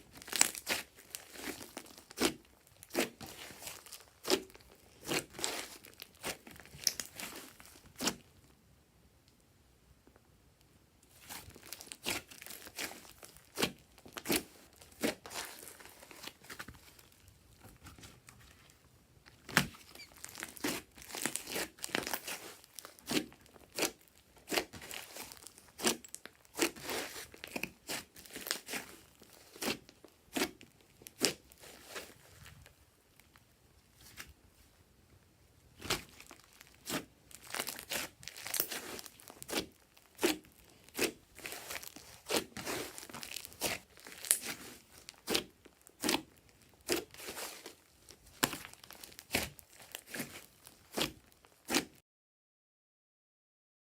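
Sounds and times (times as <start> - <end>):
slime sticky pops and crackles: 36.8 - 44.5.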